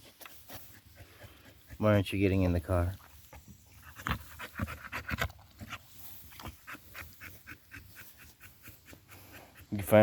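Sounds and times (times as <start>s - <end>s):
dog panting fast: 0.5s - 2.1s, 3.8s - 10.0s.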